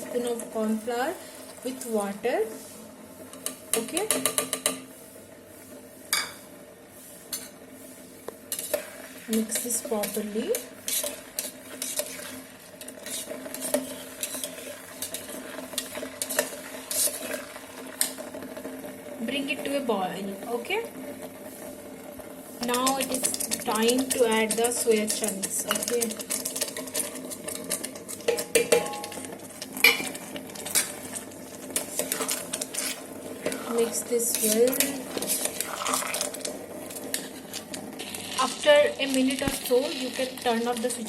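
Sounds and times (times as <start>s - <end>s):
low sizzle: 0.0s - 41.0s
spoon scraping a pot: 8.5s - 18.2s, 22.7s - 38.4s.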